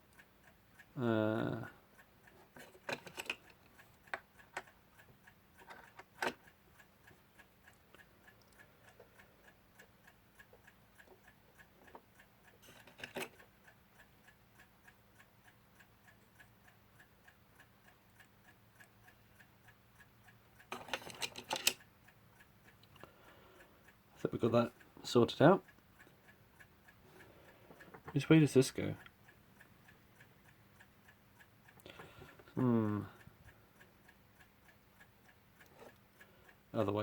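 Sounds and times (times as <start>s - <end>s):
mechanical clock ticking: 0.0s - 37.0s
sharp clicks of small metal parts: 2.5s - 4.7s, 5.6s - 6.5s, 12.6s - 13.4s, 20.7s - 21.8s.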